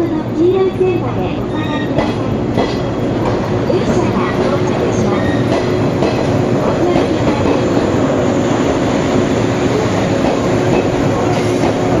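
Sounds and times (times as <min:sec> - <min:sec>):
freight train wheels rumbling: 0:00.0 - 0:12.0.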